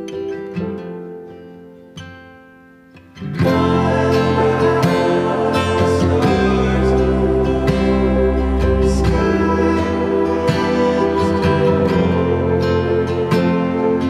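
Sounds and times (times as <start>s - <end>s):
background music: 2.7s - 14.0s
soft plucked guitar notes: 3.0s - 14.0s.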